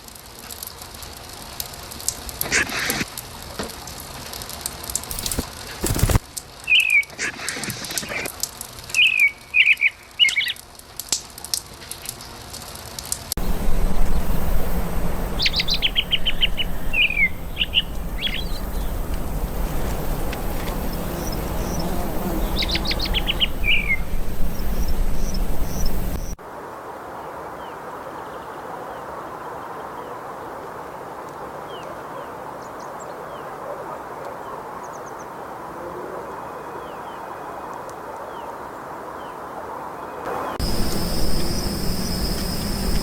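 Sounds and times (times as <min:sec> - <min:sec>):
steady hiss: 0:00.0 - 0:06.8, 0:10.8 - 0:26.7, 0:40.3 - 0:43.0
low background noise: 0:08.3 - 0:43.0
birds chirping: 0:13.4 - 0:26.4, 0:40.3 - 0:43.0.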